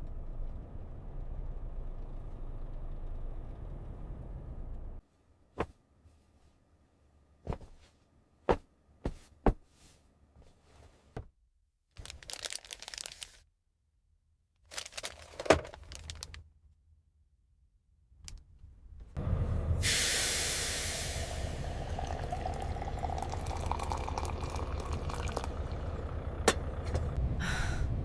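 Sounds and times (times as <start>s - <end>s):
rustling and crinkling: 7.5s - 11.3s, 12.0s - 13.4s, 14.7s - 16.4s
engine-like sound: 19.2s - 28.0s.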